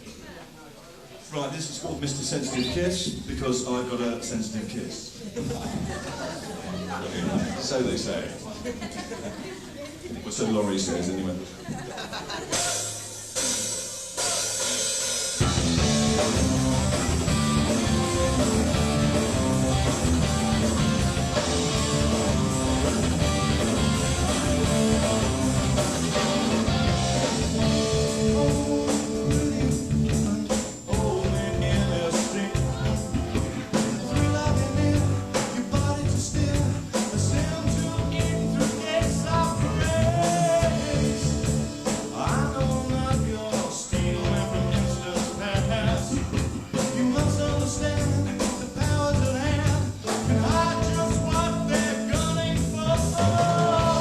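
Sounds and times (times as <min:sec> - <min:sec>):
rock band with singing: 0:11.5 - 0:54.0.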